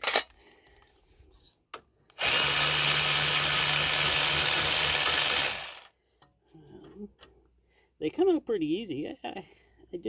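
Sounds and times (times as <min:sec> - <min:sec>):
cordless electric ratchet running: 0:02.2 - 0:05.9.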